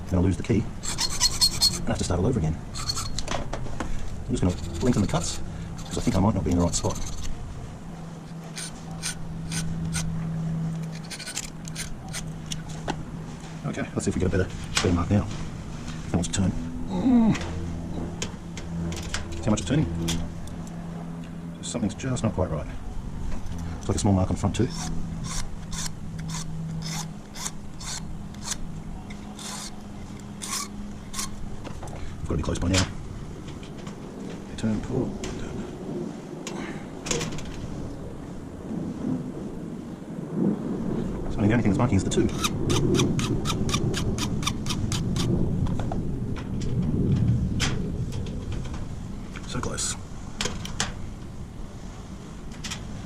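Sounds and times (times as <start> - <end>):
steady low hum: 0.0 - 53.0
file rasping on metal key: 0.8 - 1.9, 2.7 - 3.2, 4.4 - 7.3, 8.5 - 10.1, 10.8 - 12.3, 24.7 - 28.6, 29.2 - 29.8, 30.4 - 31.4.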